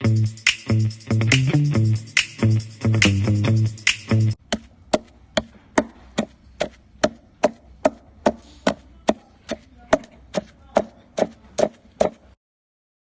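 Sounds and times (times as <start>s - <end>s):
knife chopping on wooden board: 4.5s - 12.4s.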